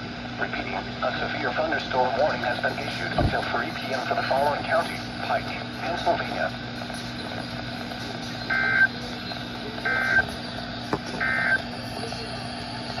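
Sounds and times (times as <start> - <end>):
radio hiss: 0.0 - 13.0
warbling data tones: 5.9 - 13.0.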